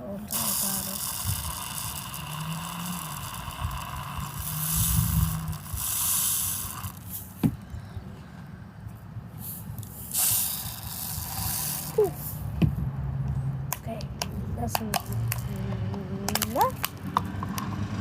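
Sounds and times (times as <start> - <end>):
liquid pouring into balloon: 0.3 - 7.1.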